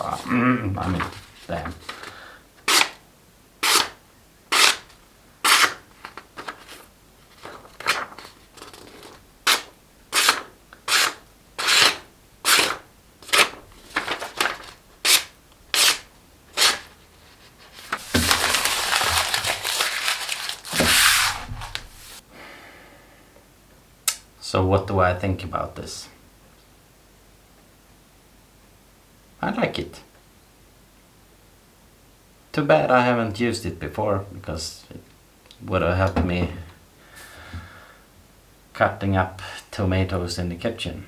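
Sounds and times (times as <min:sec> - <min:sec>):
paper rustling and crumpling: 0:00.0 - 0:03.0, 0:04.6 - 0:22.2
knife slicing paper: 0:02.7 - 0:03.0, 0:03.6 - 0:05.9, 0:09.5 - 0:16.9, 0:17.7 - 0:22.2.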